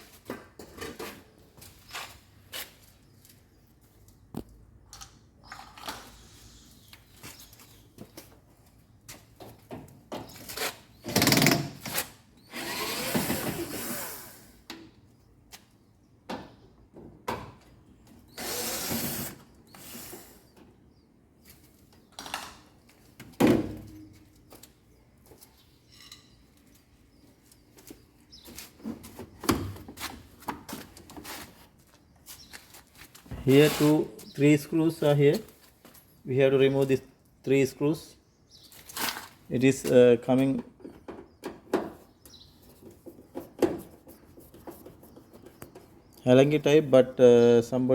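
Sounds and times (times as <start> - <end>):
power screwdriver running: 12.5 - 14.3, 18.4 - 20.2.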